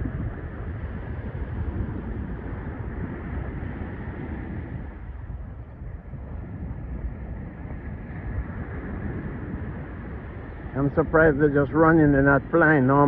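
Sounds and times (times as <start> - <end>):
wind rumbling on microphone: 0.0 - 13.0
surf hissing: 7.2 - 13.0.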